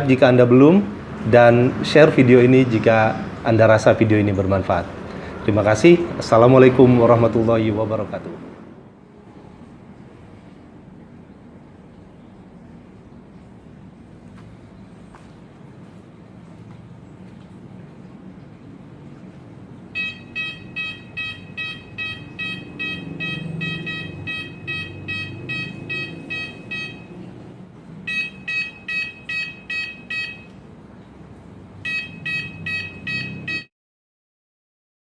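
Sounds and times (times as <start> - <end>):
electronic beeper short pulses: 20.0 - 27.2, 28.1 - 30.5, 31.8 - 33.7.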